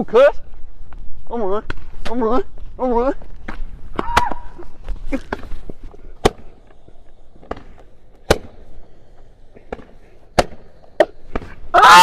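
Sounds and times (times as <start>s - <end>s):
firecracker bangs: 7.4s - 8.8s.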